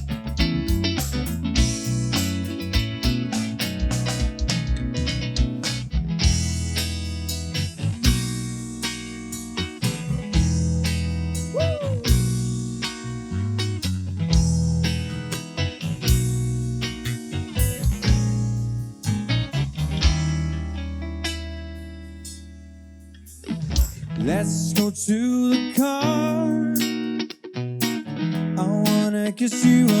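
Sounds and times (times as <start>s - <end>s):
bass: 0.0s - 30.0s
guitar: 0.0s - 30.0s
drum hits: 1.6s - 6.8s, 8.0s - 8.5s, 17.6s - 18.6s.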